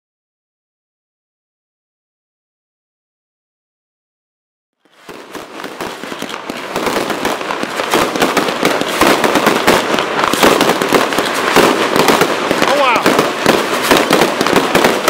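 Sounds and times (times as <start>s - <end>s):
fireworks crackling and popping: 4.8s - 15.0s.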